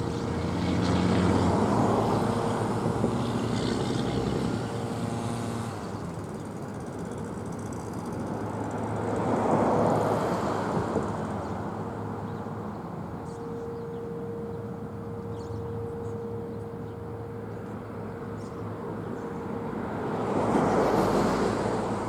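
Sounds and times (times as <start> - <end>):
vehicle passing: 0.0 - 5.9, 18.0 - 22.0
road traffic rumbling: 0.0 - 22.0
faint steady tone: 11.4 - 22.0.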